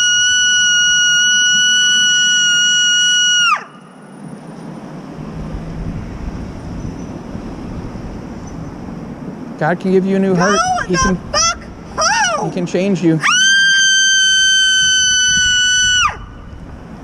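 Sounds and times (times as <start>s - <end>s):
high siren: 0.0s - 3.9s
low rumbling noise: 0.0s - 17.0s.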